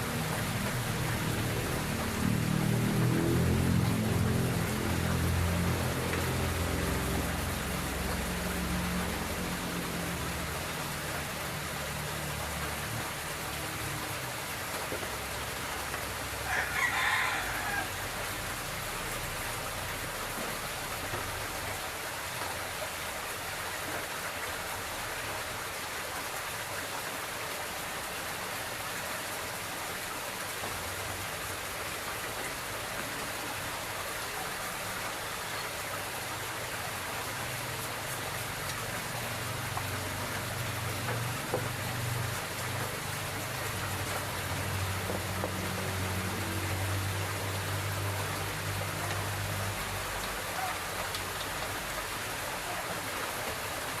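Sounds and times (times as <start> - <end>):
rooster crowing: 16.4 - 18.2.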